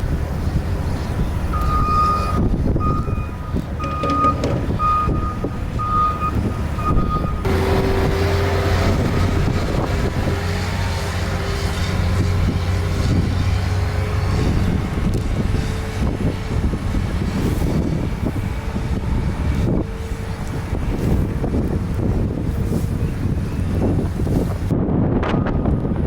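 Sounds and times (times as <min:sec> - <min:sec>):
truck engine drone: 0:00.0 - 0:26.0
truck reversing alarm beeping: 0:01.0 - 0:09.4, 0:25.2 - 0:26.0.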